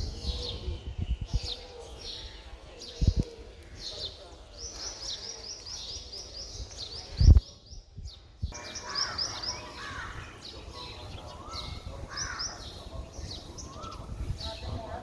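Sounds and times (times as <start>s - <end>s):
birds chirping: 0.0s - 15.0s
crows cawing: 8.6s - 10.4s.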